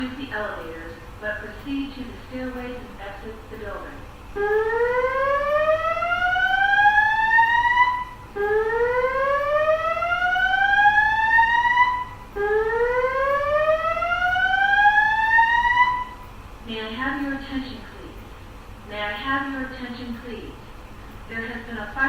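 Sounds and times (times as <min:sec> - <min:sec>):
fire alarm whoop tone: 0:04.4 - 0:16.2.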